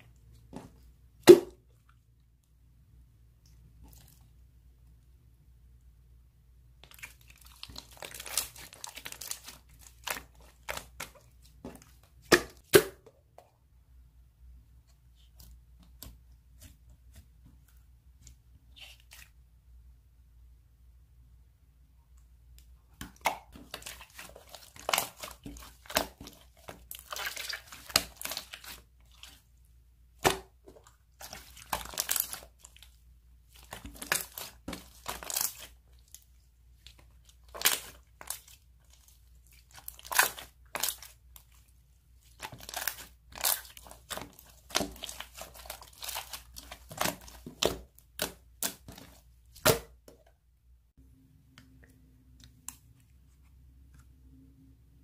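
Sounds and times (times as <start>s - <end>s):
slime crackling and popping: 31.2s - 32.7s, 33.5s - 36.2s, 37.0s - 41.2s, 42.3s - 49.0s.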